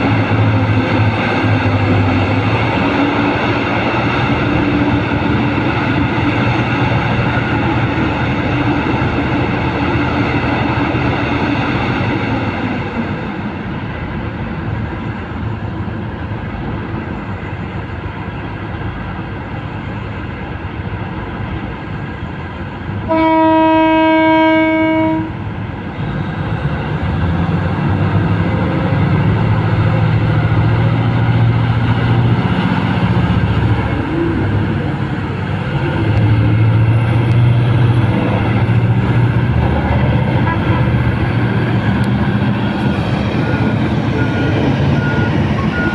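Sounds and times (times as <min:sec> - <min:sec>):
excavator engine running: 0:00.0 - 0:12.6, 0:25.4 - 0:45.9
horn blast: 0:23.1 - 0:25.4.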